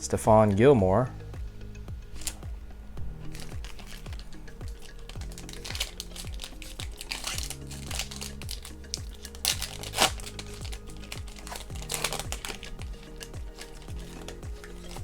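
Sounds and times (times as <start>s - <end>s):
soft music with thumping beat: 0.0s - 15.0s
card packaging crinkling: 2.2s - 2.4s, 3.3s - 15.0s.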